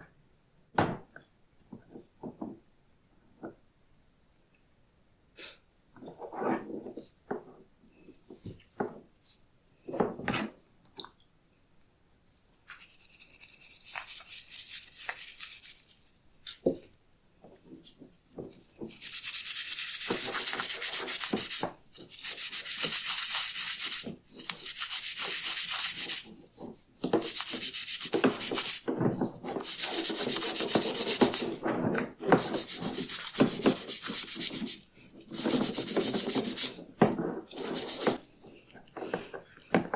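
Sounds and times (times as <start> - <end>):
abrasive rubbing on belt: 12.7 - 16.1, 18.9 - 26.3, 27.2 - 38.2.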